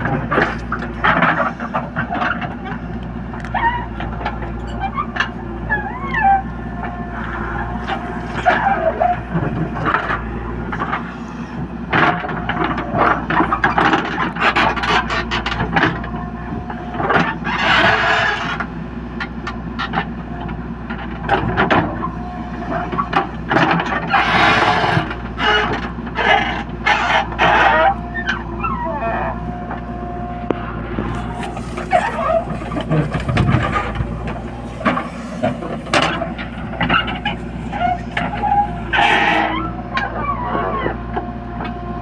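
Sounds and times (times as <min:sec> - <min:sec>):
diesel engine running: 0:00.0 - 0:42.0
bucket clanking and scraping: 0:31.0 - 0:39.7
mud rushing: 0:31.0 - 0:39.7.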